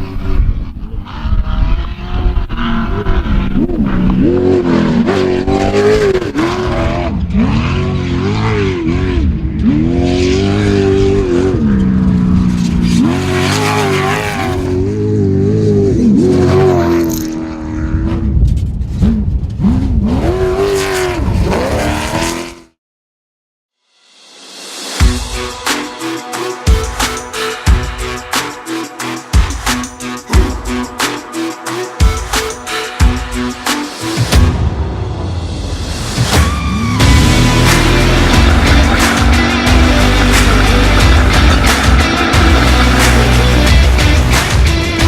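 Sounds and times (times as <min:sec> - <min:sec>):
racing engine revving: 0:00.0 - 0:18.4, 0:19.0 - 0:22.6, 0:36.1 - 0:45.0.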